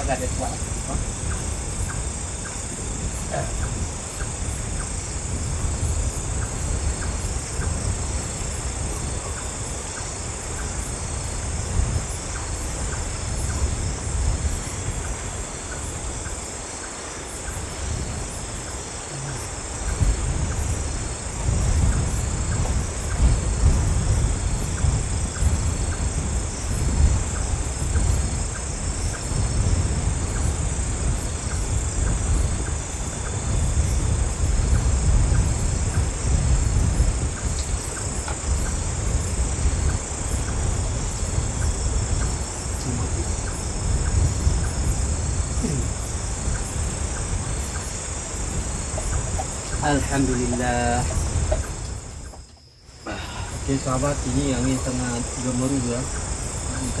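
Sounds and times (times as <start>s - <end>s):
insects chirring: 0.0s - 57.0s
strong wind gusts: 0.0s - 57.0s.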